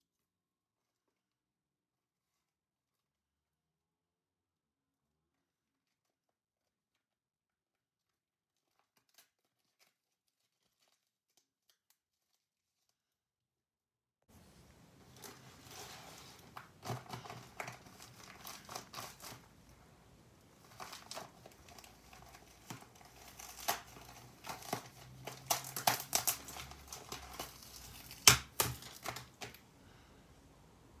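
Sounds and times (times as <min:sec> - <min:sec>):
crinkling and crackling: 0:04.9 - 0:13.2, 0:14.3 - 0:30.0.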